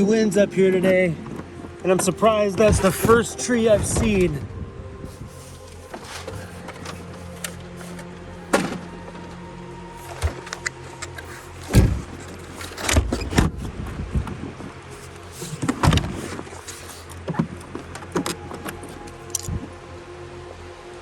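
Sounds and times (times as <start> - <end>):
van engine and road hum: 0.0 - 21.0.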